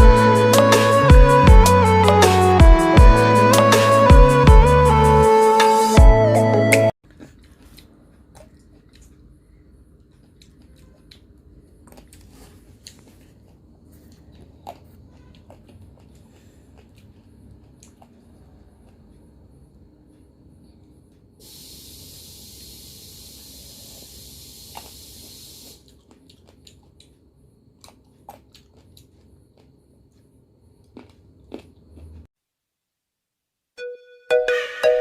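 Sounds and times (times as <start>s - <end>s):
chewing grapes: 7.0s - 19.8s, 25.7s - 32.3s
low room hum: 7.0s - 32.3s
steady hiss: 21.4s - 25.9s.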